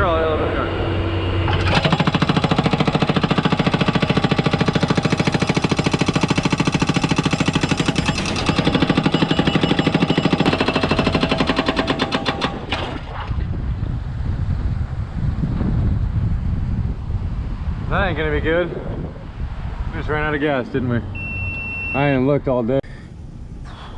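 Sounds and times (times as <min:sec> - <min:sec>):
machine engine: 0:00.0 - 0:12.9
hydraulic breaker hammering concrete: 0:01.5 - 0:13.0.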